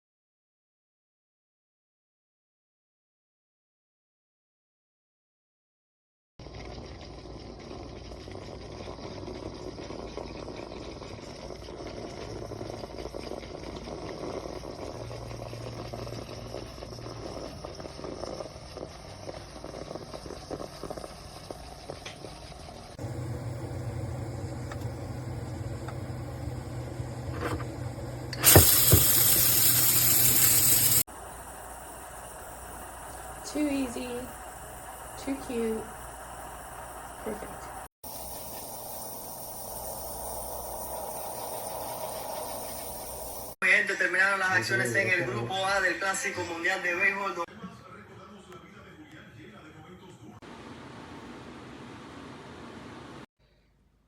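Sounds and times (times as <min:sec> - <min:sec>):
espresso machine humming: 0:13.8 - 0:18.5, 0:23.0 - 0:43.6
loud steam hiss: 0:23.0 - 0:43.6.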